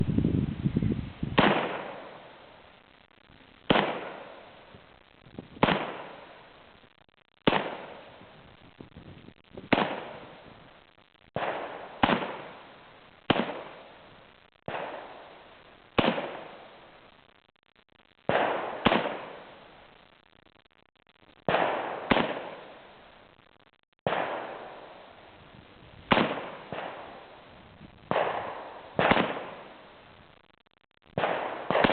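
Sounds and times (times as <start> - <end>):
rifle shots with echo: 1.4 - 2.3, 3.7 - 4.5, 5.6 - 6.4, 7.5 - 8.1, 9.7 - 10.5, 11.4 - 12.7, 13.3 - 14.0, 14.7 - 15.3, 16.0 - 16.7, 18.3 - 19.6, 21.5 - 22.8, 24.0 - 25.0, 26.0 - 30.0, 31.2 - 31.9.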